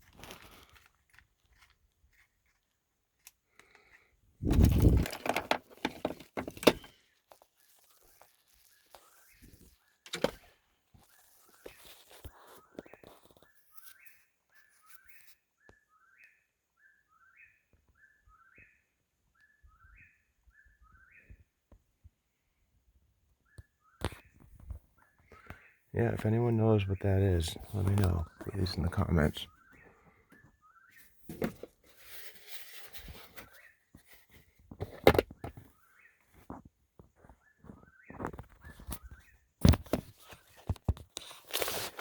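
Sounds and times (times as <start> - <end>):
knocks and rustling handling: 4.4 - 14.0, 26.2 - 30.4, 31.0 - 42.0.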